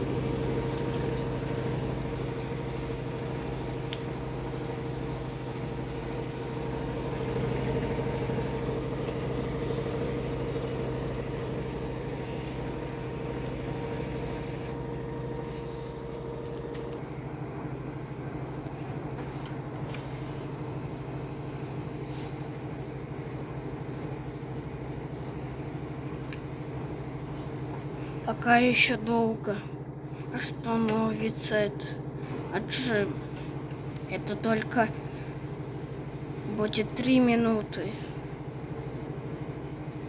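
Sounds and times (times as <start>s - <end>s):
washing machine spinning: 0.0s - 40.0s.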